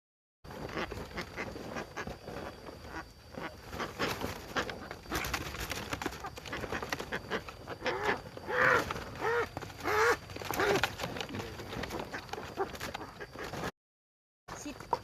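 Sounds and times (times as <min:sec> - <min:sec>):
ducks quacking: 0:00.6 - 0:05.3, 0:06.1 - 0:10.8
rustling and clicking: 0:03.7 - 0:13.7.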